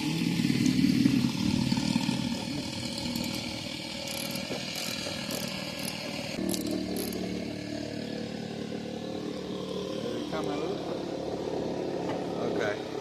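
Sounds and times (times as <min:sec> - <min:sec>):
tool turning a socket: 0:03.0 - 0:07.2.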